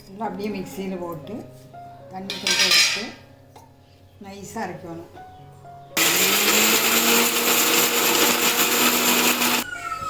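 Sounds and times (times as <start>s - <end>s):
mixer grinder motor grinding: 6.0s - 9.7s.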